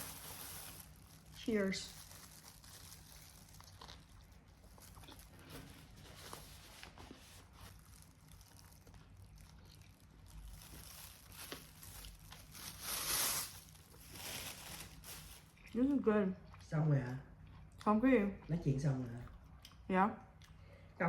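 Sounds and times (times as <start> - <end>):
food wrapper crackling: 0.0 - 15.8
chewing: 3.3 - 6.0, 7.8 - 10.4, 16.4 - 21.0.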